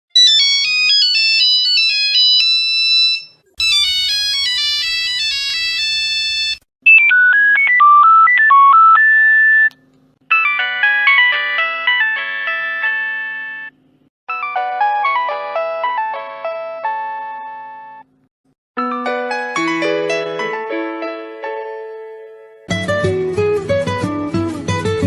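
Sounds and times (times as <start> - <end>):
mobile phone ringtone melodies: 0.2 - 9.7, 10.3 - 18.0.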